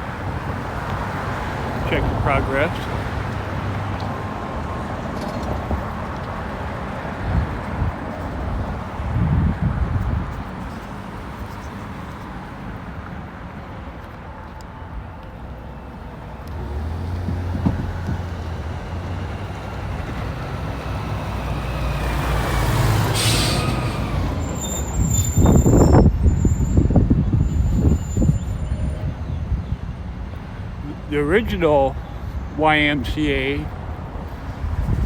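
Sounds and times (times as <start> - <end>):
diesel vehicle rumbling: 0.0 - 35.0
air brakes hissing: 22.8 - 28.8
faint brake squeal: 23.0 - 29.4.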